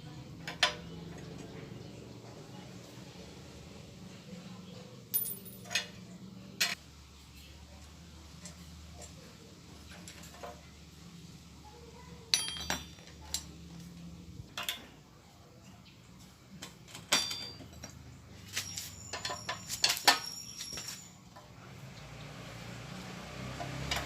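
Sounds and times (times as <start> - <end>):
metal tools clinking: 5.1 - 6.8, 12.3 - 14.9, 16.6 - 21.5.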